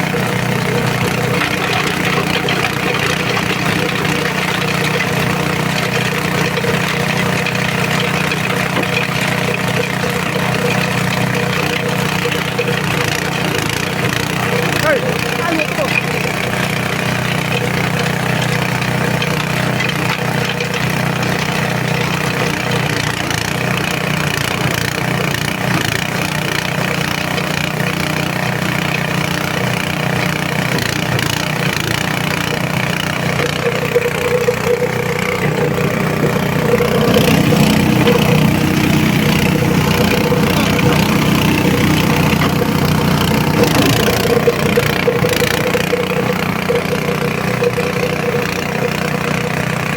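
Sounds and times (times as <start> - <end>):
shredder machine droning: 0.0 - 49.9.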